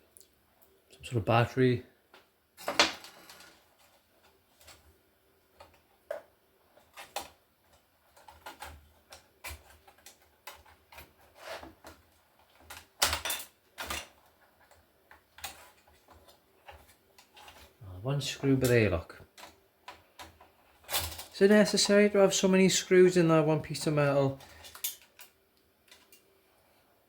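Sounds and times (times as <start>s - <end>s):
screwdriver and laptop parts clicking: 8.1s - 17.7s.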